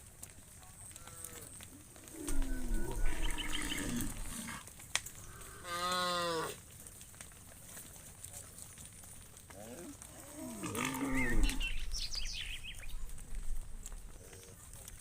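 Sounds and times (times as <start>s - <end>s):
cattle mooing: 2.0s - 4.6s, 9.6s - 11.8s
low rumble: 2.1s - 4.4s.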